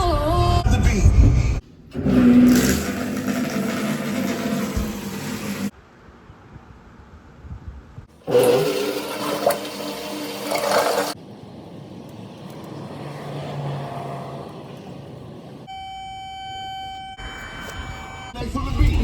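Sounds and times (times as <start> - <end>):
water rushing through drain: 2.1 - 5.7, 8.2 - 11.2
steady electronic tone: 15.7 - 18.4.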